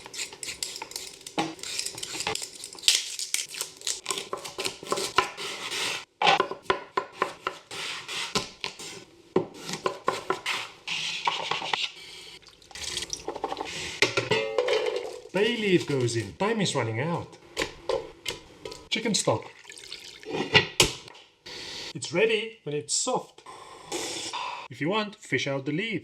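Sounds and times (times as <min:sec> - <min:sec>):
utensils and cookware clattering: 0:00.0 - 0:03.3, 0:12.8 - 0:16.2.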